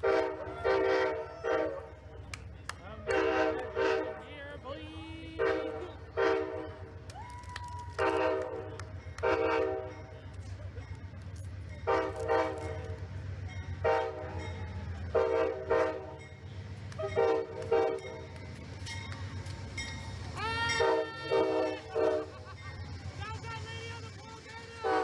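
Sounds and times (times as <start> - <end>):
locomotive air horn blasts: 0.0 - 2.0, 3.0 - 4.3, 5.4 - 7.0, 8.0 - 10.0, 11.8 - 12.9, 13.8 - 14.4, 15.1 - 16.2, 17.0 - 18.3, 20.4 - 22.4, 24.8 - 25.0
low train rumble: 0.0 - 25.0.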